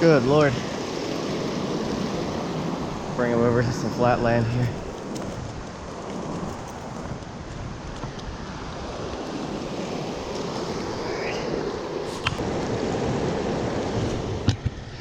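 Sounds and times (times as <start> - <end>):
river rapids rushing: 0.0 - 5.2, 8.5 - 14.1.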